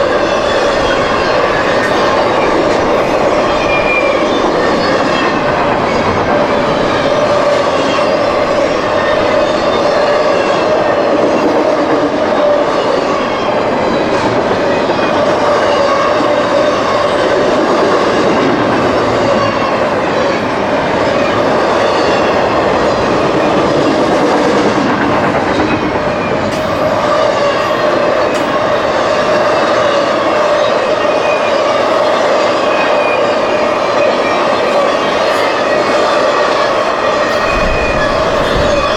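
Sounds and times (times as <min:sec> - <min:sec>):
freight train rumbling past: 0:00.0 - 0:38.9
high squeal from train wheels: 0:00.0 - 0:38.9
wheels clacking over rail joints: 0:00.0 - 0:38.9.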